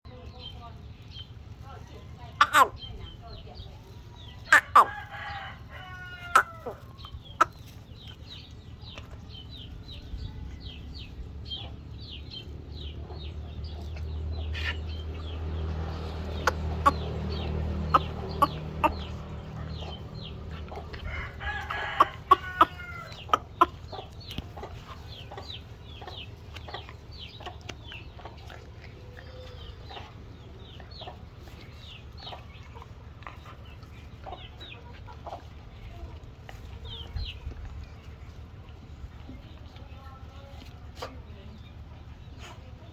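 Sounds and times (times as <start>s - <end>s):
longer animal calls: 2.4s - 2.8s, 4.5s - 5.0s.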